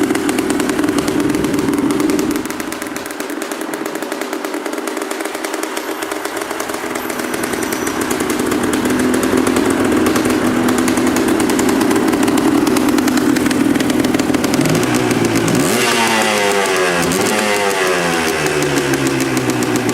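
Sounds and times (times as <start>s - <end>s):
two-stroke motorcycle engine revving: 0.0s - 19.9s.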